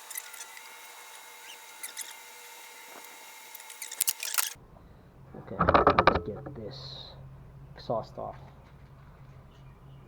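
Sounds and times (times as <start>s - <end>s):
clicks and rattles of trimmer parts: 5.6s - 6.6s.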